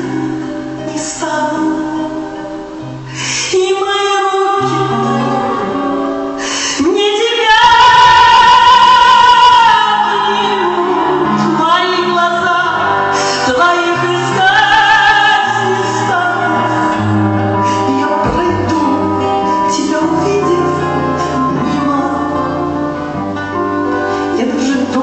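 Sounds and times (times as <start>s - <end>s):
woman singing a ballad: 0.0s - 25.0s.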